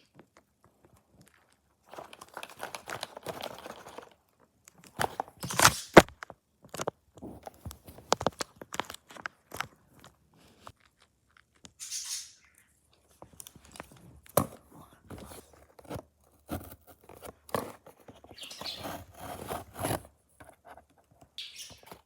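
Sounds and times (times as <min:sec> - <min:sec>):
packaging crinkling and rustling: 0:00.8 - 0:11.6
packaging tearing: 0:01.9 - 0:04.2, 0:04.9 - 0:06.2.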